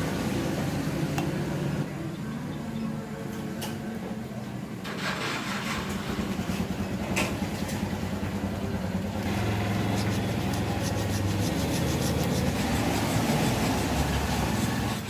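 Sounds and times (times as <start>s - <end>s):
refrigerator compressor humming: 5.8s - 15.0s.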